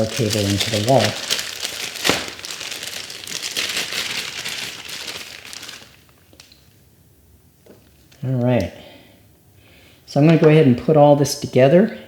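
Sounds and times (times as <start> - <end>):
packaging crinkling: 0.0 - 6.8.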